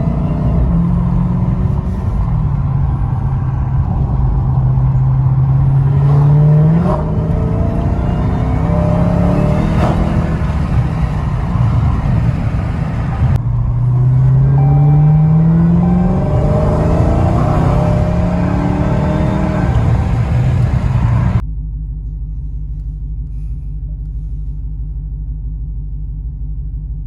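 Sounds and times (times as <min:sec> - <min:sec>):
loud car engine revving: 0:00.0 - 0:21.4.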